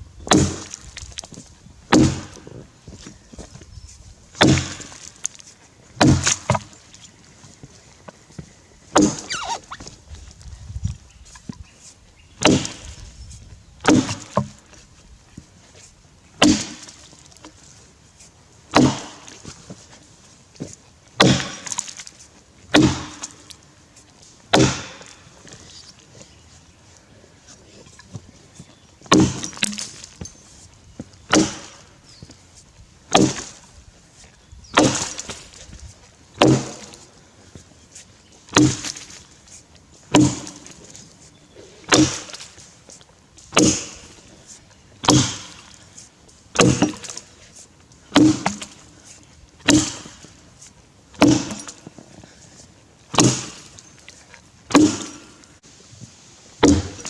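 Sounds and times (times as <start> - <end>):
axe chopping into log: 0.3 - 0.9, 1.9 - 3.0, 4.4 - 5.1, 6.0 - 6.7, 9.0 - 9.9, 12.4 - 13.0, 13.8 - 14.6, 16.4 - 17.0, 18.7 - 19.4, 21.2 - 22.0, 22.8 - 23.4, 24.5 - 25.1, 29.1 - 30.0, 31.3 - 31.9, 33.1 - 33.7, 34.7 - 35.6, 36.4 - 37.0, 38.5 - 39.3, 40.1 - 40.8, 41.9 - 42.5, 43.6 - 44.2, 45.0 - 45.7, 46.6 - 47.2, 48.2 - 48.8, 49.6 - 50.3, 51.2 - 51.8, 53.1 - 53.8, 54.7 - 55.4, 56.6 - 57.0.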